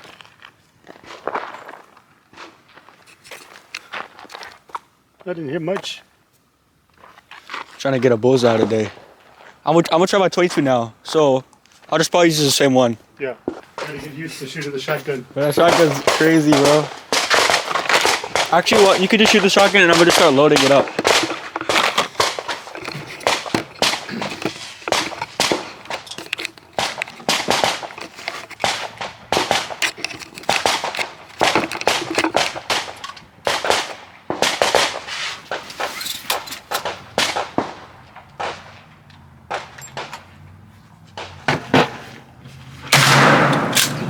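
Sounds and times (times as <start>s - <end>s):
gunshots: 15.5s - 26.1s, 26.8s - 28.0s, 28.6s - 35.6s, 42.9s - 44.0s.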